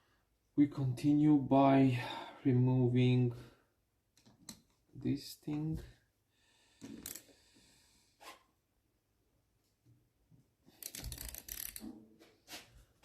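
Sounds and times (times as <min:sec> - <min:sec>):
hand tools clicking and rattling: 0:10.8 - 0:11.9.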